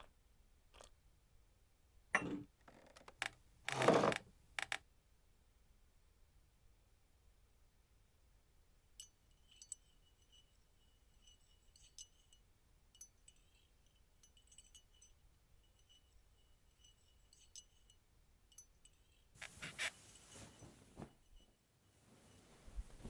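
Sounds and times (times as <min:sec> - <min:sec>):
faint metallic tinkling: 0:08.8 - 0:23.0.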